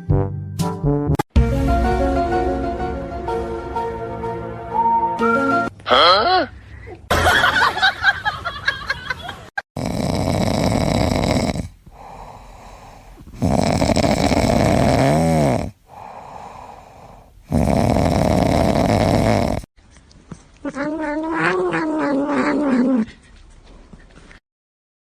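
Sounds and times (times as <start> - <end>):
pet snoring: 9.8 - 19.7
quiet breathing: 11.7 - 13.6, 15.7 - 17.5.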